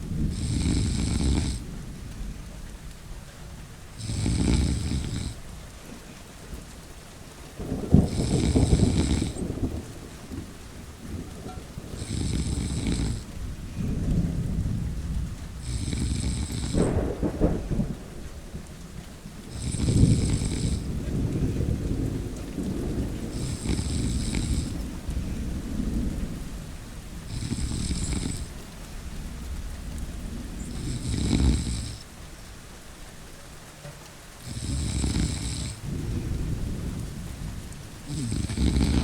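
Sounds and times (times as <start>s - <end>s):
rumbling thunder: 0.0s - 5.5s, 7.5s - 32.1s, 34.4s - 39.0s
steady rain: 0.0s - 39.0s
person snoring: 0.3s - 1.6s, 4.0s - 5.4s, 8.1s - 9.4s, 12.0s - 13.2s, 15.6s - 16.9s, 19.5s - 20.9s, 23.3s - 24.8s, 27.3s - 28.5s, 30.7s - 32.0s, 34.5s - 35.8s, 38.1s - 39.0s.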